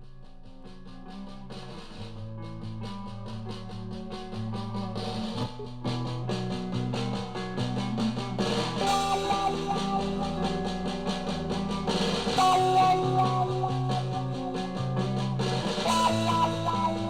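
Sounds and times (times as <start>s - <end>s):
rock song through speaker: 0.0s - 17.0s.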